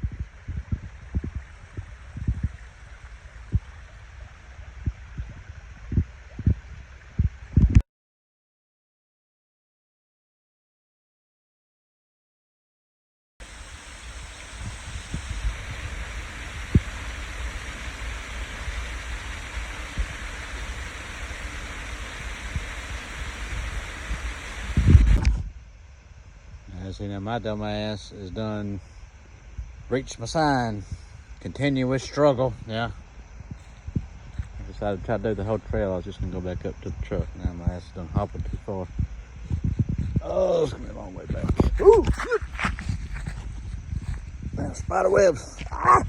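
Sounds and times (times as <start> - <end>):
water flowing: 0.0 - 7.6, 13.4 - 25.5, 29.9 - 43.5
low thumps on microphone: 4.8 - 7.8, 24.1 - 25.6, 41.2 - 44.6
soft low thumps: 38.2 - 44.7.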